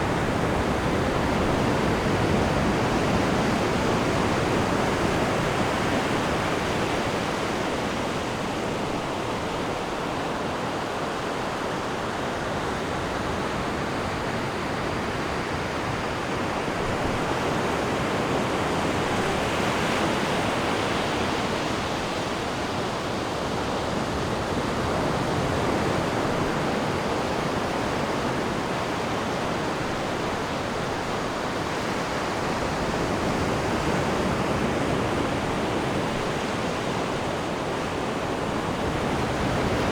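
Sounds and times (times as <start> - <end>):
ocean waves breaking on beach: 0.0 - 39.9.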